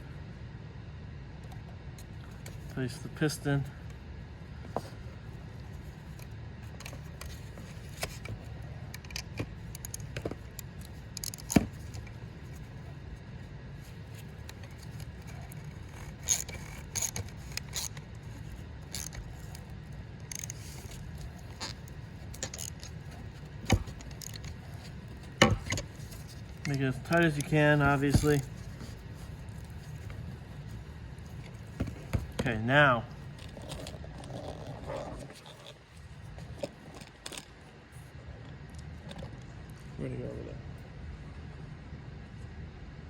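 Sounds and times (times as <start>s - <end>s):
steady low hum: 0.0s - 43.0s
metal tools clicking and scraping: 6.2s - 12.7s, 14.2s - 32.6s.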